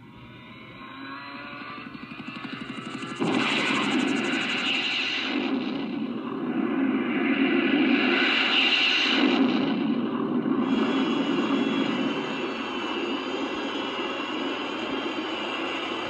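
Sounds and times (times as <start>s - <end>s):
steady high whine: 0.0s - 16.0s
jet-like engine rush: 1.4s - 16.0s.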